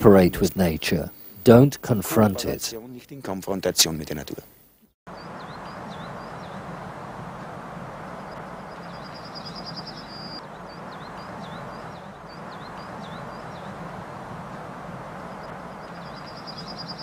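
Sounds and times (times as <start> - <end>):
songbird singing: 4.8 - 17.0.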